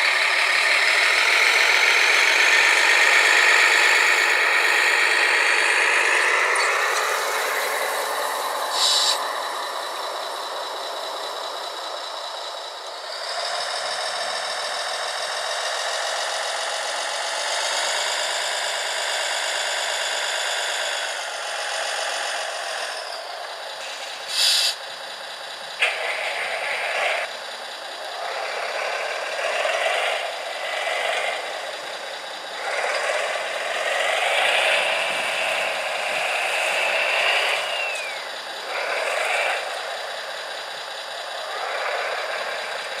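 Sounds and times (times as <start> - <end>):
small electric motors whining: 0.2 - 14.4, 28.0 - 43.0.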